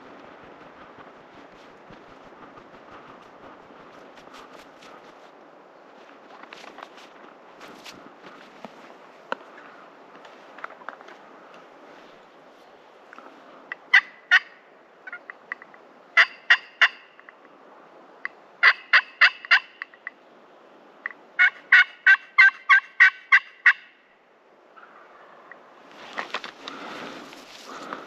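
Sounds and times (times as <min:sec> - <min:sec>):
turkey yelping: 0:18.6 - 0:19.8, 0:21.4 - 0:23.9.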